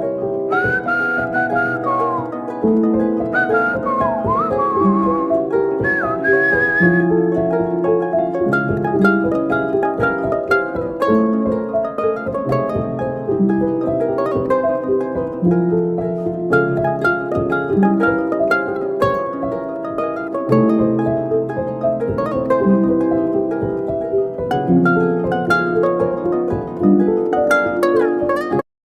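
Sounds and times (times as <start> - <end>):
plucked harp-like string music: 0.0 - 28.7.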